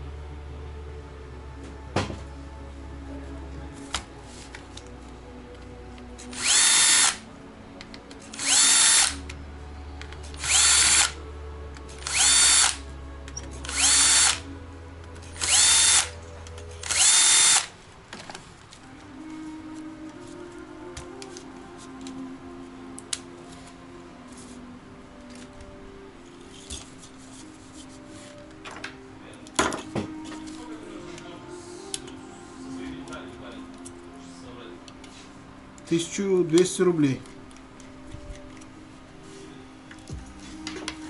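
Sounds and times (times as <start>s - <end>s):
electric screwdriver motor whine: 6.3s - 7.2s, 8.3s - 9.2s, 10.3s - 11.2s, 11.9s - 12.8s, 13.6s - 14.4s, 15.4s - 16.2s, 16.8s - 17.7s.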